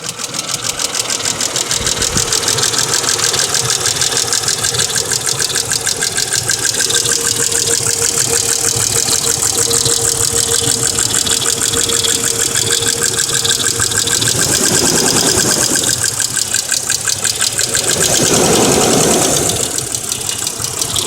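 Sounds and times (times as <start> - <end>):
car engine idling: 0.0 - 21.0
rapid even engine clicking: 0.0 - 21.0
steady tone: 7.6 - 21.0.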